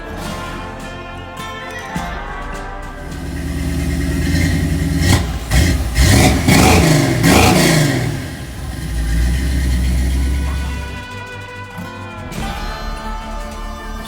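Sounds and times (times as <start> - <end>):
pickup engine revving and idling: 3.0 - 11.0.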